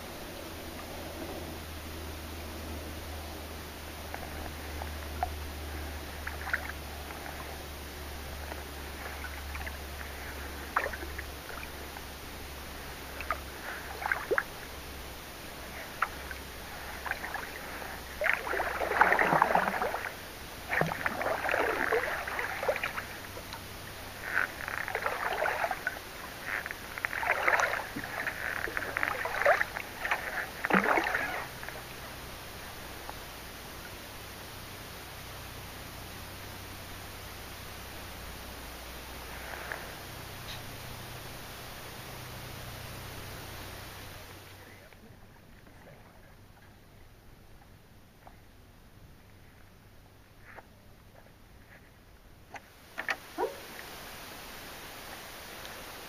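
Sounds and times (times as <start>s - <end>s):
kayak paddle splashing: 4.0s - 33.2s
water dripping: 8.4s - 12.1s, 12.7s - 14.7s, 15.6s - 32.1s.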